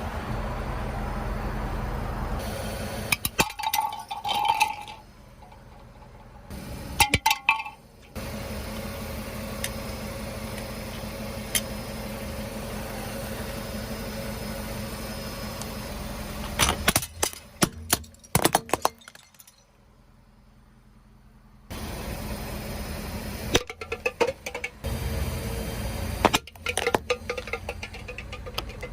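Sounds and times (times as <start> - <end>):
car engine hum: 0.0 - 28.9
tyres crushing brittle objects: 16.4 - 19.6.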